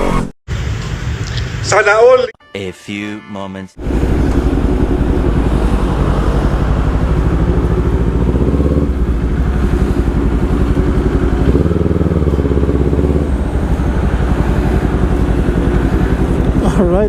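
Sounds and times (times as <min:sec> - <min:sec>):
motorcycle engine running: 0:03.8 - 0:17.0.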